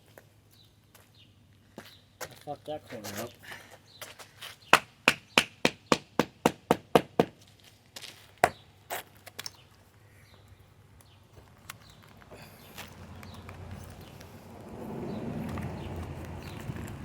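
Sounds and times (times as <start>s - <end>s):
tool knocking on concrete: 5.1s - 7.4s.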